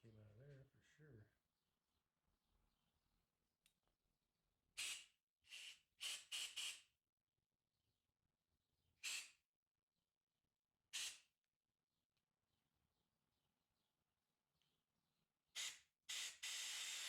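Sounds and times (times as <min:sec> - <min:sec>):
compressed air blasts: 0:04.8 - 0:06.8, 0:09.0 - 0:09.3, 0:11.0 - 0:11.2, 0:15.6 - 0:17.0.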